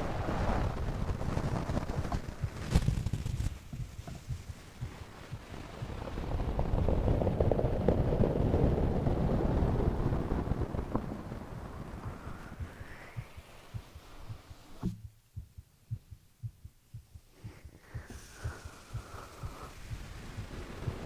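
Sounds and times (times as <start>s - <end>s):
muffled low chest rumbling: 0.0s - 21.0s
soft low thumps: 0.5s - 21.0s
rushing breath sound: 12.0s - 14.8s, 17.2s - 21.0s.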